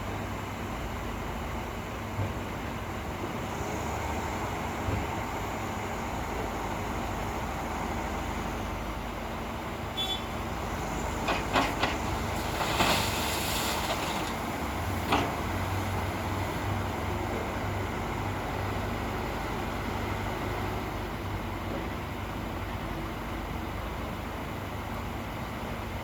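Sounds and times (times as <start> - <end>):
diesel machinery rumbling: 0.0 - 26.0
short burst of hiss: 12.4 - 14.3.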